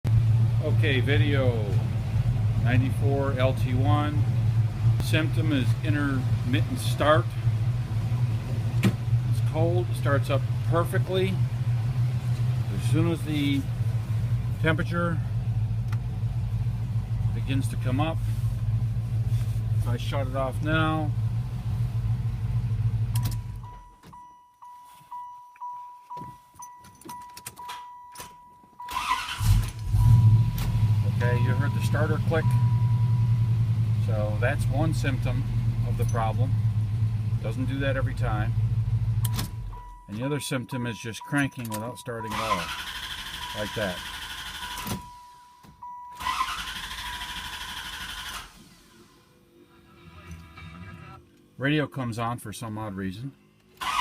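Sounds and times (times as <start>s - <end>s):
car engine idling: 0.0s - 24.1s, 28.4s - 51.6s
dashboard warning chime pulsing: 23.2s - 36.4s, 39.2s - 47.3s
starter cranking engine: 42.3s - 45.1s, 46.2s - 48.8s, 53.8s - 54.0s.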